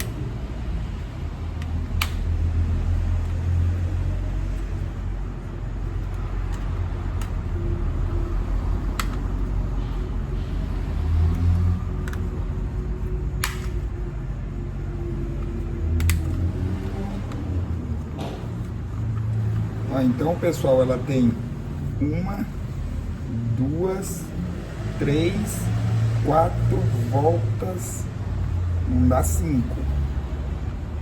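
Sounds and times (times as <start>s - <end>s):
sharp clicks: 1.5s - 2.4s, 13.4s - 14.0s, 15.9s - 16.5s.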